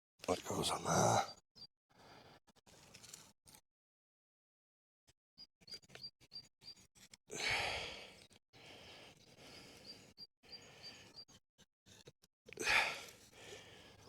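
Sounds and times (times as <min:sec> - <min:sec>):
clicks and rustles of bow drill: 0:02.6 - 0:03.6
man sighing: 0:12.6 - 0:13.1.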